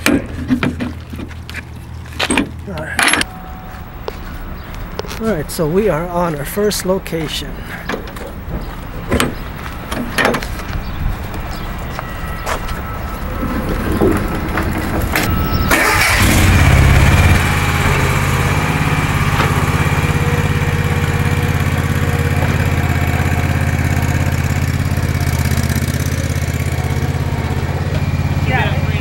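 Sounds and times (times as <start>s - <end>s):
lawn mower engine starting: 13.2s - 29.0s.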